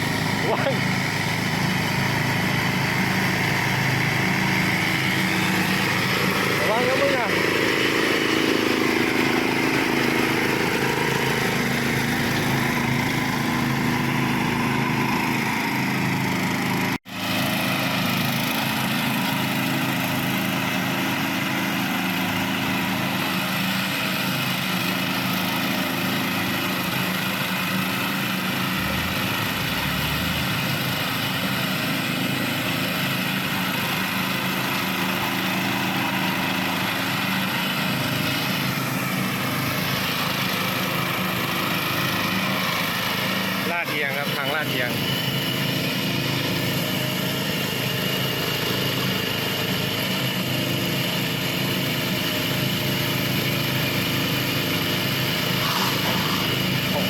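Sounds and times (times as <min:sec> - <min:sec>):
lawn mower engine running: 0:00.0 - 0:57.0.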